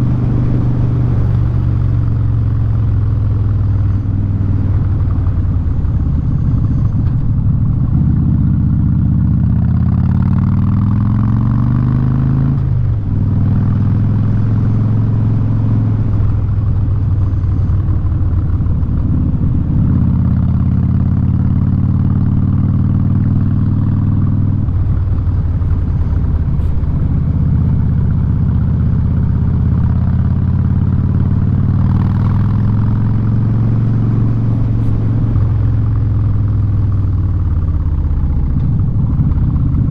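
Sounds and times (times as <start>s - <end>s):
loud motorcycle engine revving: 9.7s - 12.7s, 29.6s - 36.7s.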